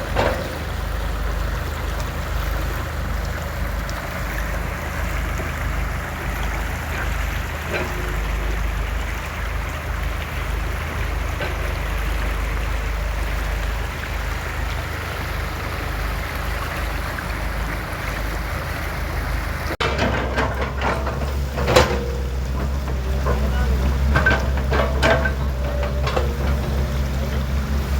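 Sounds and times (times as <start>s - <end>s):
diesel engine rumbling: 0.0s - 27.9s
knocks and clatters: 19.8s - 27.6s.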